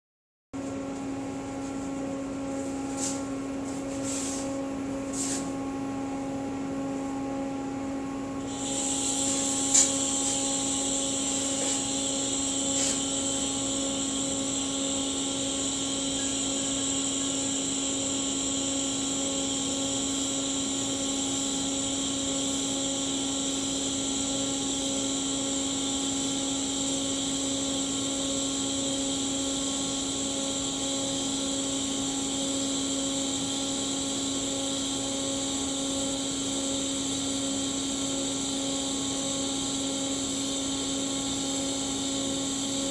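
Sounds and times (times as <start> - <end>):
welding machine humming: 0.6 - 42.9
welding arc hissing: 8.5 - 22.4.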